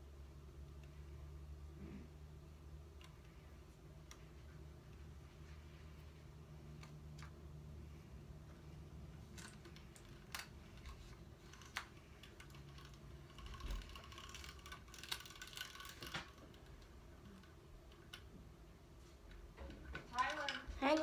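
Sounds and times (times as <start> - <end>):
camera parts clicking and rattling: 9.3 - 18.2.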